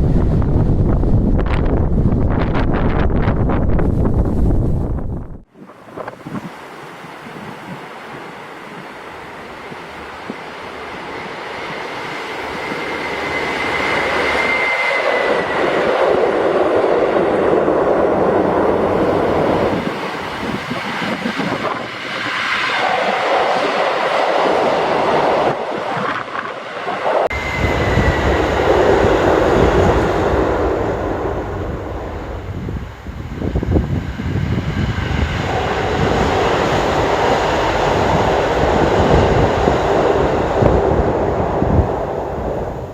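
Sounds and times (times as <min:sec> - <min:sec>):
low rumble: 0:00.0 - 0:05.5
train running past: 0:06.4 - 0:20.5, 0:22.4 - 0:42.9.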